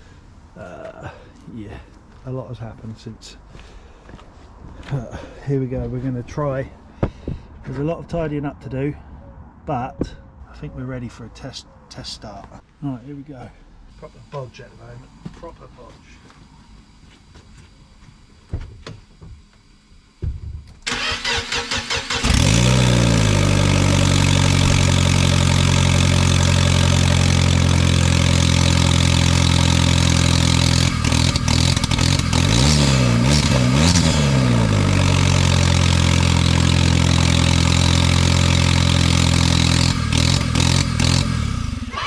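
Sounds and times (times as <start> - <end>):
starter cranking: 20.8 - 23.2, 30.4 - 32.8
car engine idling and revving: 20.8 - 42.0.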